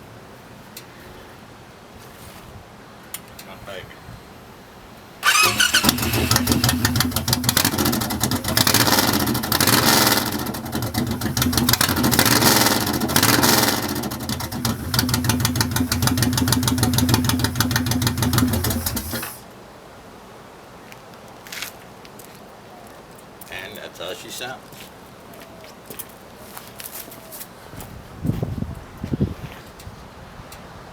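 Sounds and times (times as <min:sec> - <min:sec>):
motorcycle engine idling and revving: 0:05.2 - 0:19.4.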